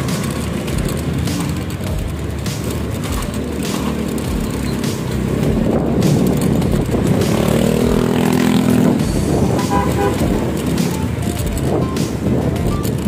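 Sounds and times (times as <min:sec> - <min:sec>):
street traffic: 0:00.0 - 0:13.0
vehicle engine passing by: 0:00.0 - 0:13.0.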